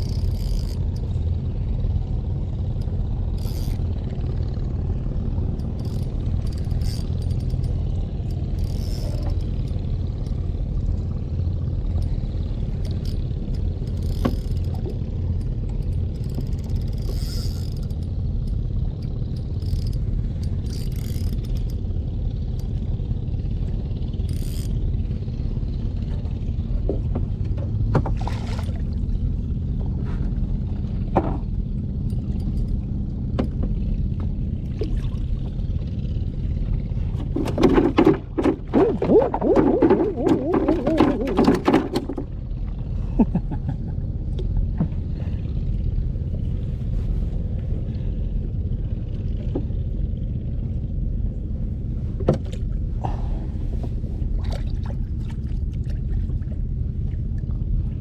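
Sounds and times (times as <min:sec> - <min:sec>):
engine rumbling: 0:00.0 - 0:58.0
loud choppy sound: 0:37.8 - 0:41.9.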